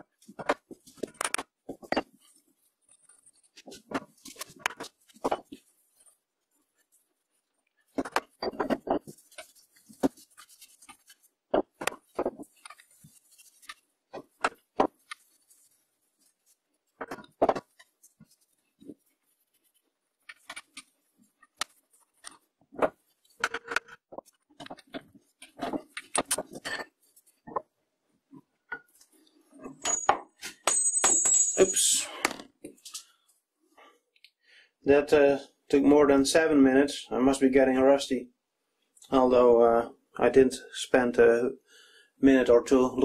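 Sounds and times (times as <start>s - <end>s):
metal tools clinking: 29.6s - 32.1s.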